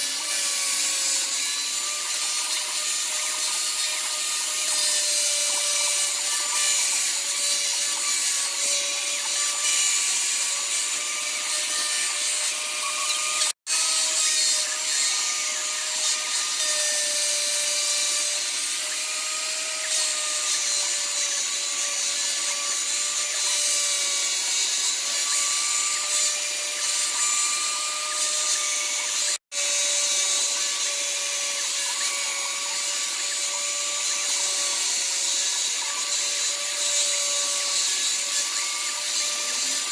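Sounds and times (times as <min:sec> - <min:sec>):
electric tool motor whining: 0:00.0 - 0:39.9.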